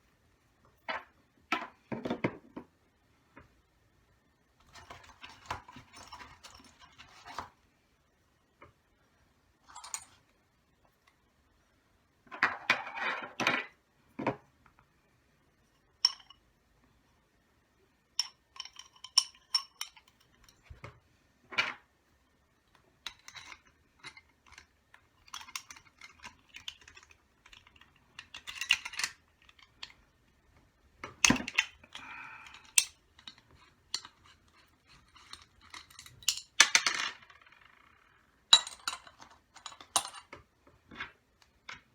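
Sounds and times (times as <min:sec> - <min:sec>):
metal parts and tools clinking: 0:18.2 - 0:20.8, 0:23.0 - 0:30.0, 0:31.1 - 0:37.4, 0:38.5 - 0:40.4.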